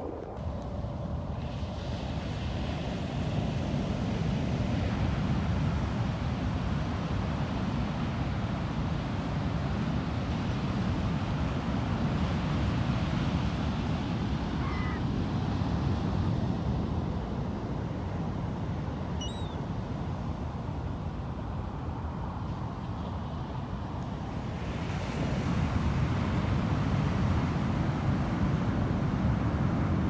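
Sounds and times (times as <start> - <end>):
ocean surf: 0.0 - 30.0
wind: 0.0 - 30.0
faint short bird calls: 14.6 - 15.0, 19.2 - 19.6.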